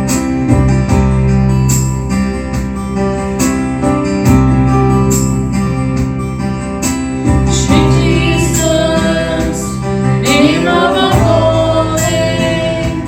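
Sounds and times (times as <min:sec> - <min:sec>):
keyboard and guitar chords: 0:00.0 - 0:13.0
person singing: 0:07.6 - 0:13.0.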